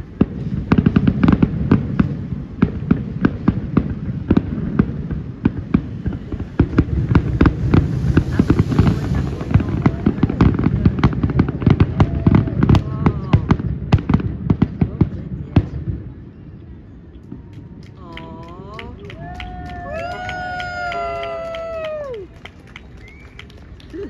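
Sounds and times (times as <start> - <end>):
fireworks bursting and crackling: 0.0 - 24.0
low rumble: 4.9 - 16.2.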